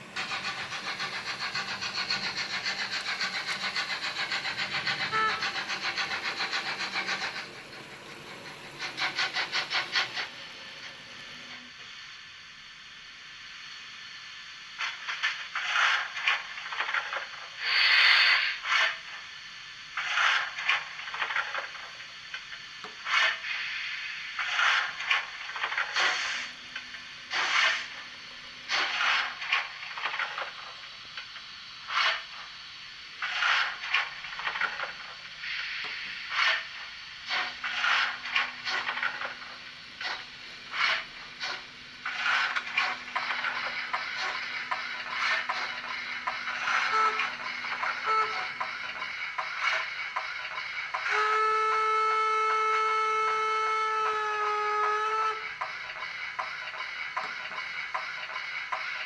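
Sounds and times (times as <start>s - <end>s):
long loud steam hiss: 0.0s - 59.0s
steam chuffs from small speaker: 0.0s - 59.0s.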